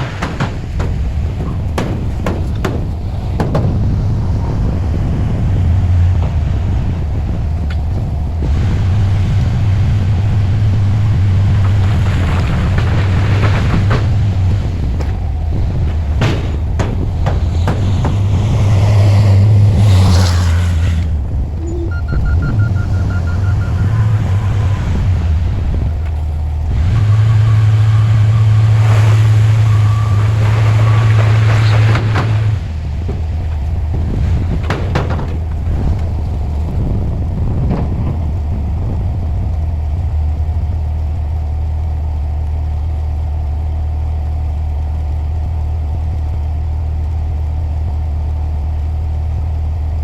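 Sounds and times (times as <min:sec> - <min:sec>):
rough grinding noise: 0:00.0 - 0:39.2
diesel engine rumbling: 0:00.0 - 0:50.0
high-pitched whine or beep: 0:21.6 - 0:24.5.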